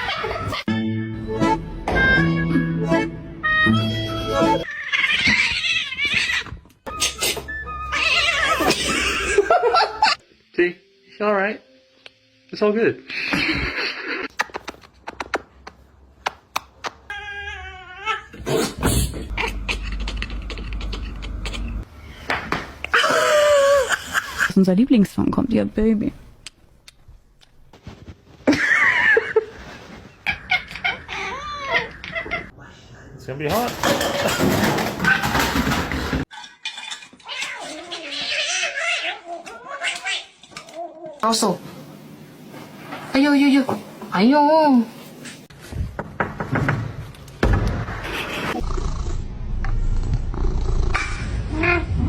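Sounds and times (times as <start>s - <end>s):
cat yowling: 4.7s - 6.6s, 7.8s - 8.7s
loud clattering: 33.5s - 36.2s.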